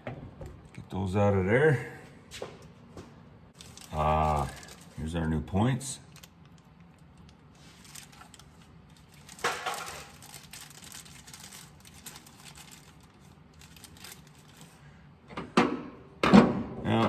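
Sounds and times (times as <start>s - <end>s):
packaging crinkling and rustling: 3.6s - 5.4s, 6.1s - 14.8s.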